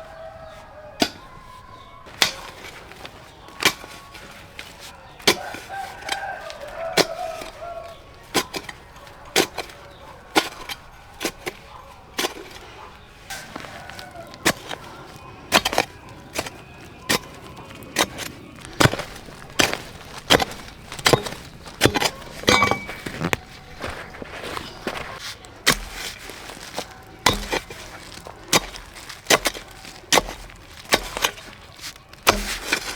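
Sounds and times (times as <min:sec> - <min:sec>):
sharp knocks or cracks: 0:25.6 - 0:32.9.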